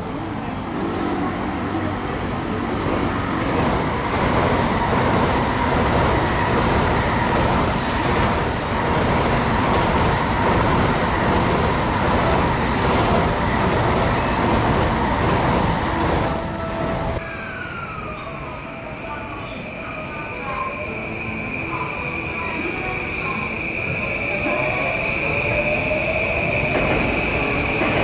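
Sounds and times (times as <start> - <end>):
train whine: 0.0 - 28.0
train wheels rumbling on rails: 0.2 - 17.2, 20.3 - 28.0.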